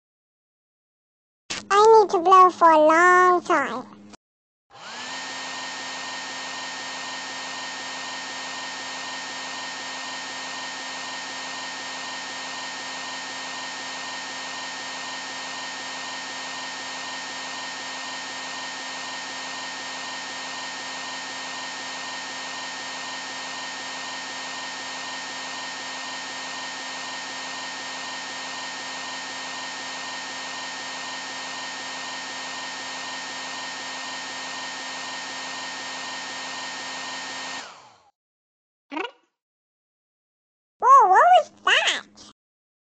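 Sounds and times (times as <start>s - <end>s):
hair dryer running: 4.7s - 38.1s.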